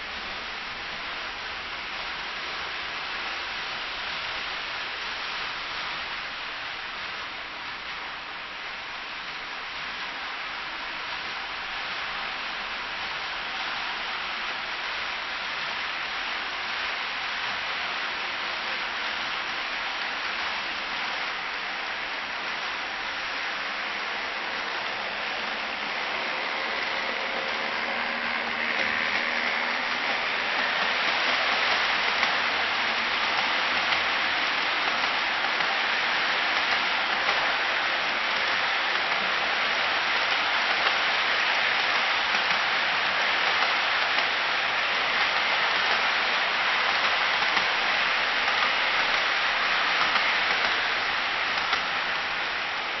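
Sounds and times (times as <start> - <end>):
faint locomotive motor whine: 0.0 - 53.0
model train wheels rattling: 23.6 - 53.0.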